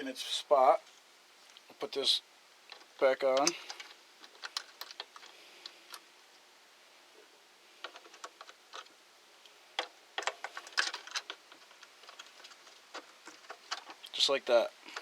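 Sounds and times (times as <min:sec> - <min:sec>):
plastic parts clicking: 0:02.7 - 0:06.1, 0:07.8 - 0:09.0, 0:09.8 - 0:14.1.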